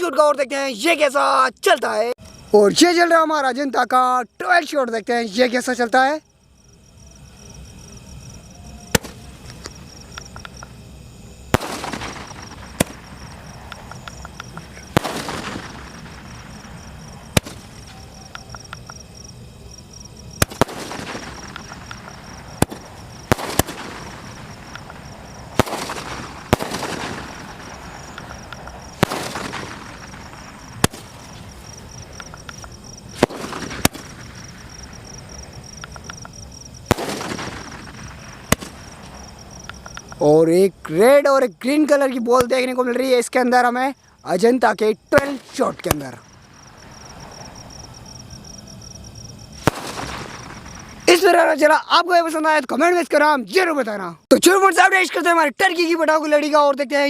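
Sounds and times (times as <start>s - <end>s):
crickets chirping: 0.0s - 57.0s
firework bangs with hiss: 7.6s - 40.2s, 45.1s - 51.2s.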